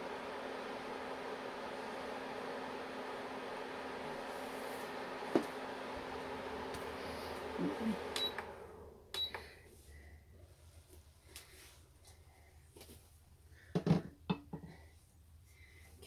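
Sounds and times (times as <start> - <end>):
kitchen fan humming: 0.0 - 10.2.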